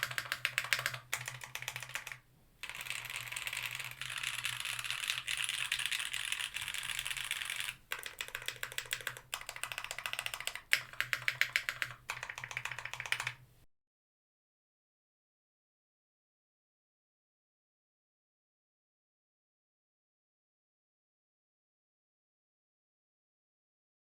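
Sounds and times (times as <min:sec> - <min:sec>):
typing on mechanical keyboard: 0:00.0 - 0:13.4.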